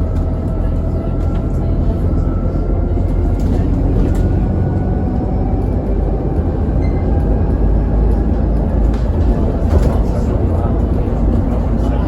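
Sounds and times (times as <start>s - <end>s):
bus engine and road rumble: 0.0s - 12.0s.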